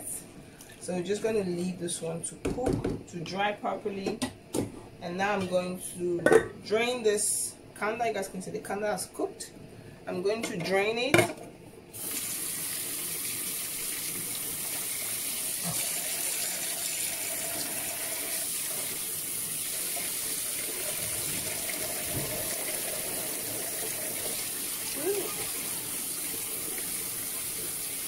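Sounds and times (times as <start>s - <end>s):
water running into sink: 12.0s - 28.0s.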